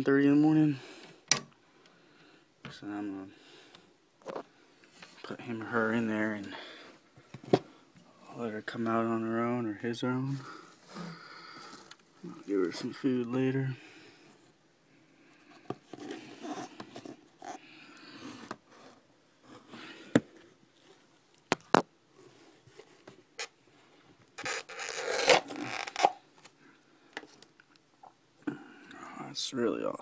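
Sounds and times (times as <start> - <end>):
handling rustling and scraping: 15.5 - 26.6.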